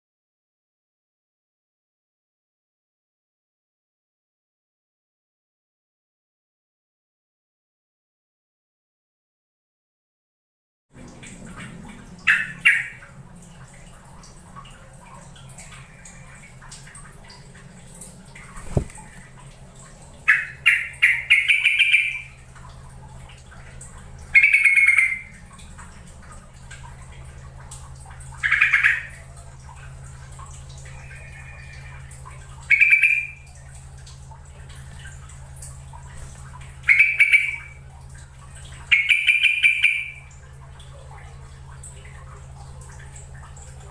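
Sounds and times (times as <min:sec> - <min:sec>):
bird bubbling calls: 0:11.4 - 0:13.7, 0:15.2 - 0:17.7, 0:18.4 - 0:33.7, 0:35.9 - 0:40.5.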